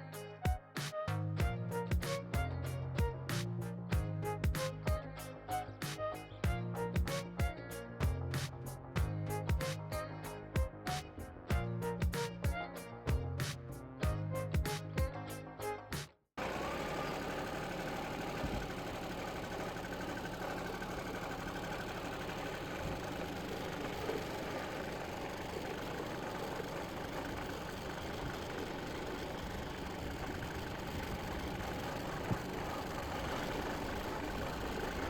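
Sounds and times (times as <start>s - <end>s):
small engine running: 16.4s - 35.0s.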